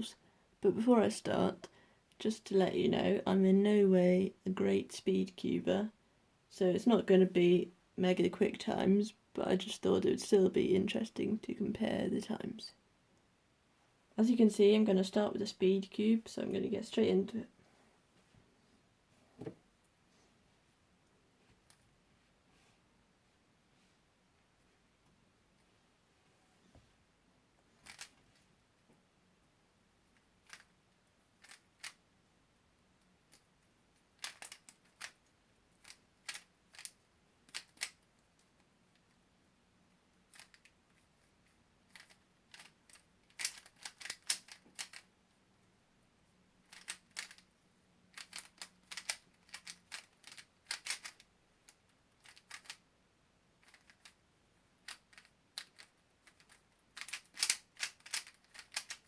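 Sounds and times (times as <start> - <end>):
puzzle cube plastic clicks: 27.8 - 28.4, 30.2 - 30.8, 31.4 - 32.0, 33.3 - 39.1, 40.3 - 40.8, 41.4 - 45.1, 46.6 - 47.5, 48.1 - 52.8, 53.6 - 54.2, 54.8 - 59.0.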